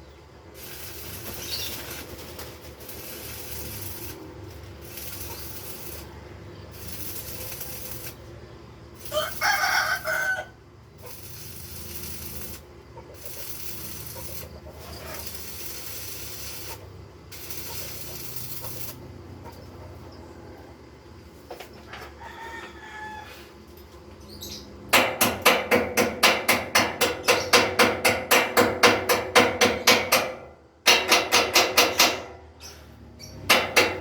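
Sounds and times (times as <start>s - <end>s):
steady hiss: 0.5s - 19.0s
rooster crowing: 9.0s - 10.6s, 21.9s - 23.7s.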